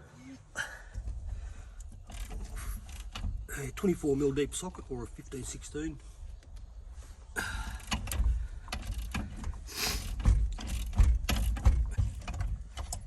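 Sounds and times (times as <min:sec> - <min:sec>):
socket wrench clicking and clunking: 0:01.8 - 0:03.4, 0:07.8 - 0:13.0.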